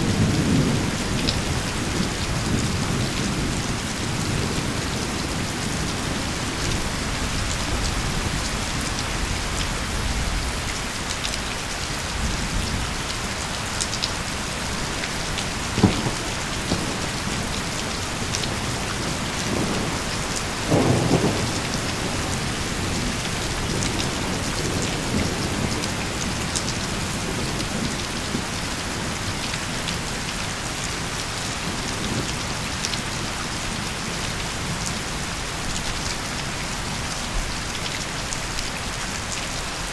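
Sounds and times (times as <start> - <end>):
low rolling thunder: 0.0 - 10.6, 14.7 - 30.0
heavy rain falling: 0.0 - 39.9
sharp thunder crack: 15.7 - 17.5, 20.7 - 24.0.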